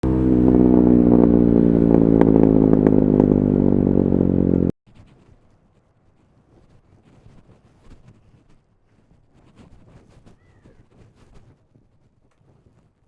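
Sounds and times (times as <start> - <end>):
exhaust crackles: 0.0 - 4.7
faint low rumble: 0.0 - 4.7
motorcycle engine running: 0.0 - 4.7.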